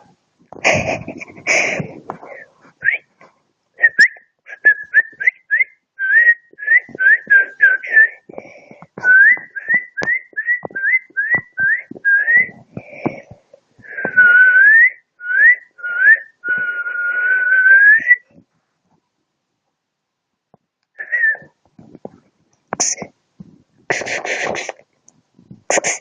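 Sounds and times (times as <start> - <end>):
person whistling: 2.8 - 3.1, 3.8 - 8.2, 9.0 - 12.6, 13.9 - 18.3, 21.0 - 21.5.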